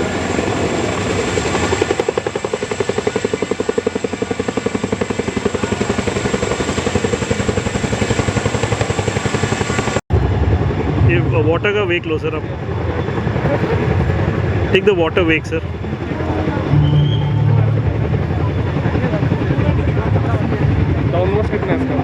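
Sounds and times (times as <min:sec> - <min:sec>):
helicopter rotor blades beating: 0:00.0 - 0:22.0.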